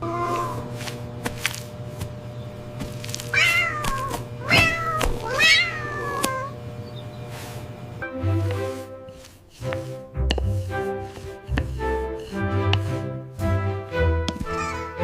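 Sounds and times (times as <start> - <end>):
cat meowing: 0.0 - 0.6, 3.3 - 6.6, 14.5 - 15.0.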